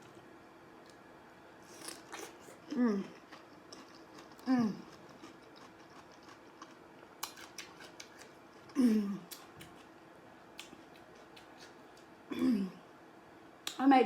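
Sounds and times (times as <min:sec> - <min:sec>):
chewing crunches: 0:01.7 - 0:09.9.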